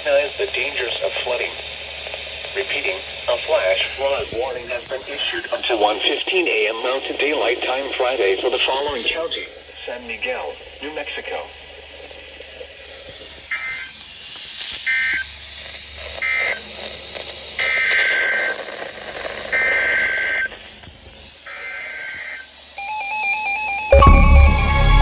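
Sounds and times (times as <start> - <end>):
loud electronic music: 23.9 - 25.0
stepping electronic tone pattern: 23.9 - 25.0.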